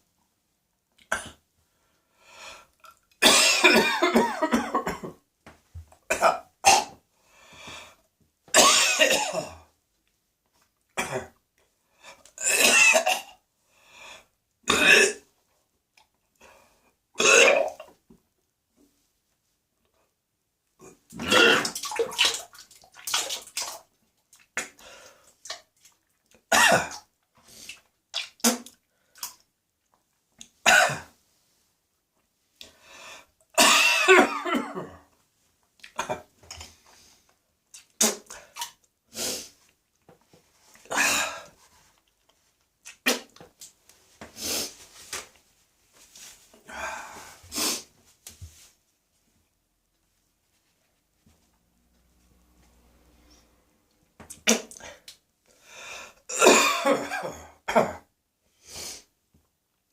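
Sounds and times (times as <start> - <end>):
person coughing and gagging: 1.1 - 1.4, 3.2 - 5.2, 6.1 - 7.0, 8.5 - 9.6, 11.0 - 11.4, 12.4 - 13.4, 14.7 - 15.3, 17.2 - 17.9, 21.1 - 22.0, 26.5 - 27.1, 30.6 - 31.1, 33.6 - 35.1, 36.0 - 36.3, 40.9 - 41.5, 56.3 - 58.1.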